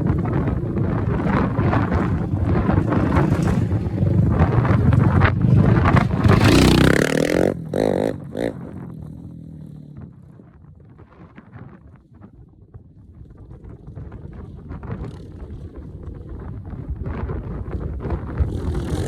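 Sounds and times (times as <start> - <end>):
atv engine revving: 0.0 - 9.9, 18.4 - 19.0.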